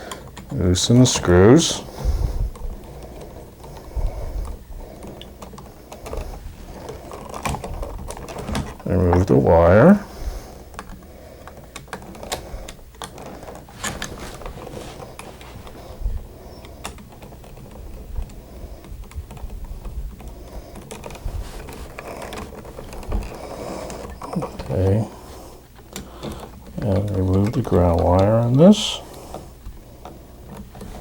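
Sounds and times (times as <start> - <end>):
small clicks of wire and metal: 2.5 - 9.4, 10.7 - 15.8, 25.7 - 31.0
light scraping of wire: 11.5 - 17.8, 20.5 - 31.0.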